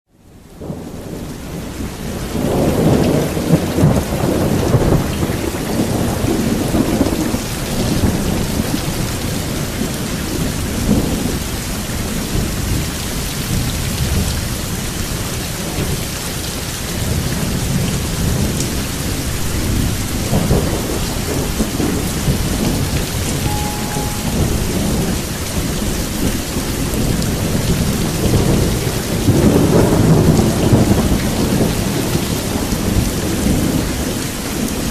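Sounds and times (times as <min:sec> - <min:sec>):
heavy rain: 0:00.1 - 0:34.9
thunder rumbling: 0:17.0 - 0:34.9.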